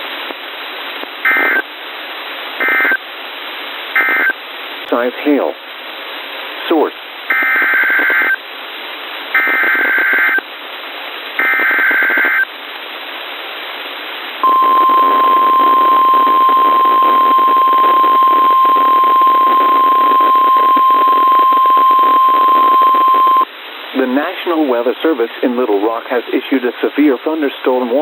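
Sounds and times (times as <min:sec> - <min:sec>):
radio hiss: 0:00.0 - 0:01.7, 0:03.8 - 0:05.7, 0:06.5 - 0:08.4, 0:14.4 - 0:28.0
steady warning alarm tone: 0:14.4 - 0:23.4
harsh digital data tones: 0:14.4 - 0:23.5.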